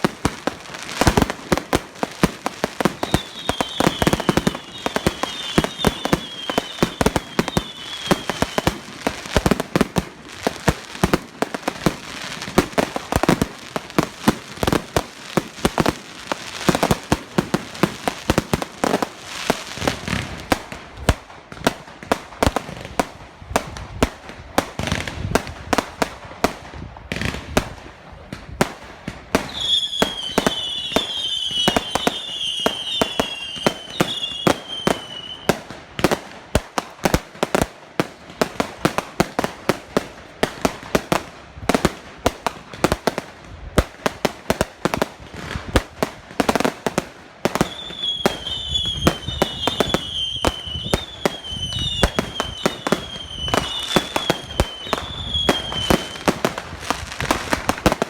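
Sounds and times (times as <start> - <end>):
fireworks bangs and cracks: 0.0 - 58.0
whistling fireworks: 0.0 - 58.0.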